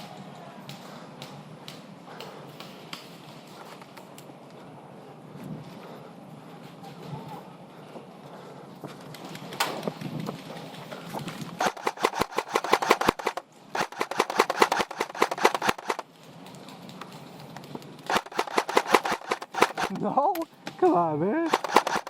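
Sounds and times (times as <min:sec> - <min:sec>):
airsoft rifle firing: 0:11.6 - 0:16.0, 0:18.1 - 0:20.0, 0:21.4 - 0:22.0.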